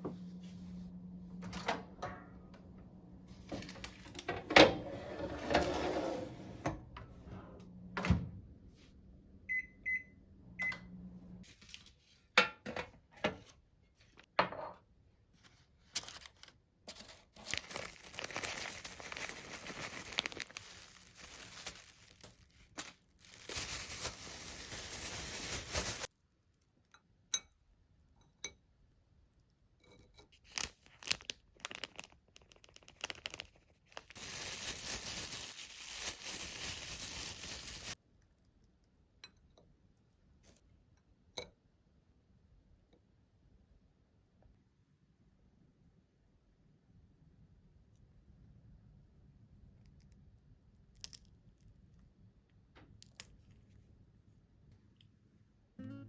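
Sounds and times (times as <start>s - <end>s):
rustling: 15.4s - 26.1s, 30.4s - 38.0s
short high beeps: 55.8s - 56.0s.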